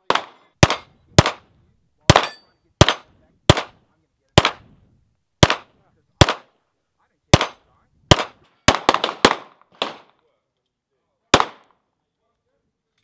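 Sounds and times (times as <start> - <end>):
pistol shots with echo: 0.0 - 3.8, 4.4 - 4.7, 5.4 - 6.6, 7.3 - 10.2, 11.3 - 11.8.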